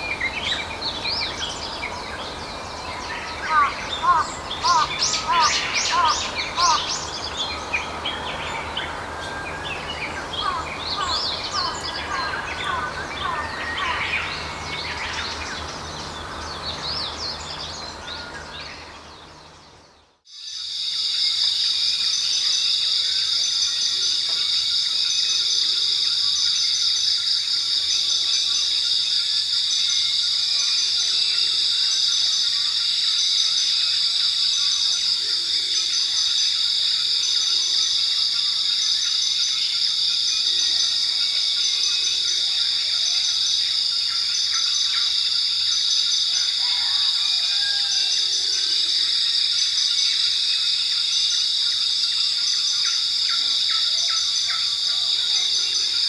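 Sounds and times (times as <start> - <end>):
songbirds chirping: 0.0 - 20.3
insects chirring: 0.0 - 56.0.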